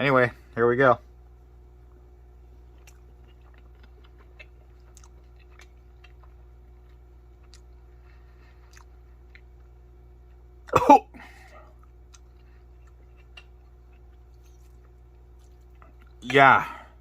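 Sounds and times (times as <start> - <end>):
steady low hum: 0.0 - 17.0
man chewing noodles: 2.5 - 10.8, 11.5 - 16.2.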